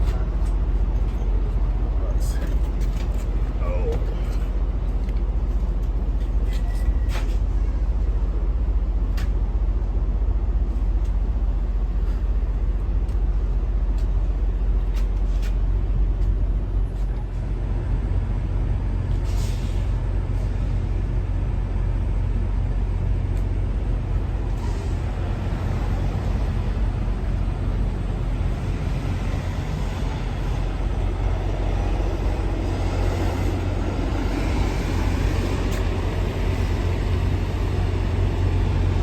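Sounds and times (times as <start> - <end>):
diesel truck engine idling: 20.0 - 39.0.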